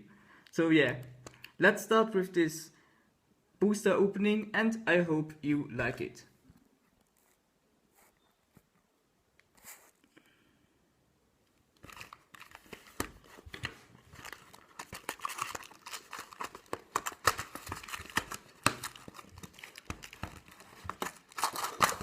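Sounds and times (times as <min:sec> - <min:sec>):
plastic wrapping crinkling and tearing: 0:11.8 - 0:22.0.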